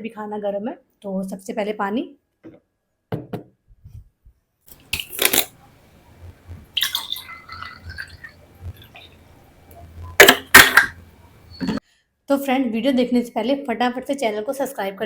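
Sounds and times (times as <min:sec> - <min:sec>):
tableware knocking and clinking: 0:10.2 - 0:11.1.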